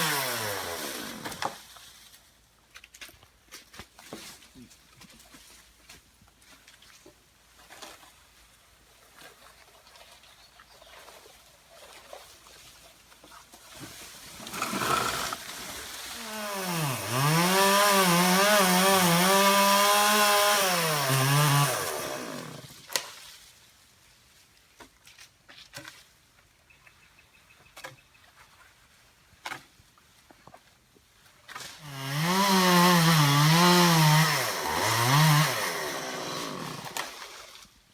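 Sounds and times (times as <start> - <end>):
chainsaw revving: 0.0 - 1.6, 14.4 - 22.8, 31.8 - 37.4.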